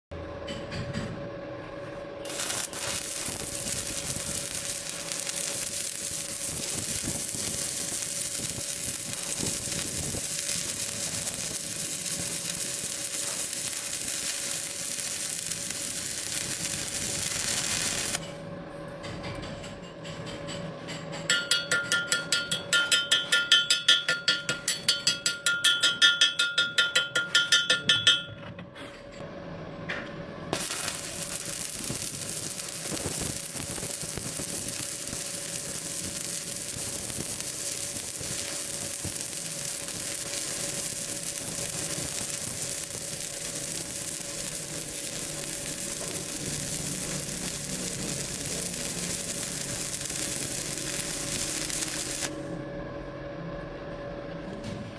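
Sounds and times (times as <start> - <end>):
steady whine: 0.2 - 18.9, 29.2 - 54.4
welding arc crackling hiss: 2.2 - 18.2, 30.5 - 52.6.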